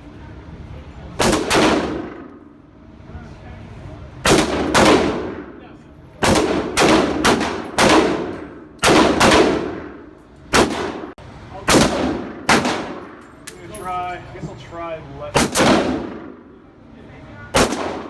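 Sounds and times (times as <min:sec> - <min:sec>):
gunshots with short echo: 0:17.6 - 0:18.0.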